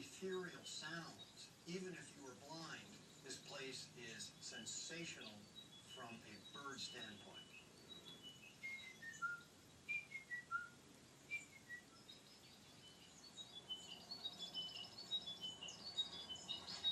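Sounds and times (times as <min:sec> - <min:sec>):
bird fast trill: 0:02.7 - 0:16.9
bird whistling descending phrase: 0:08.1 - 0:12.1.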